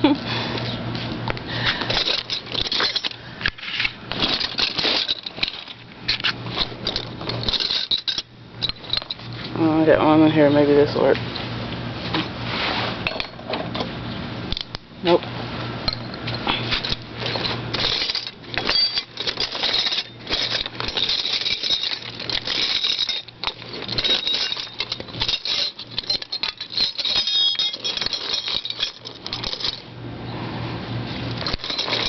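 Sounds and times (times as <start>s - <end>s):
metal sockets clinking: 1.8s - 9.3s, 15.9s - 29.9s, 31.3s - 32.0s.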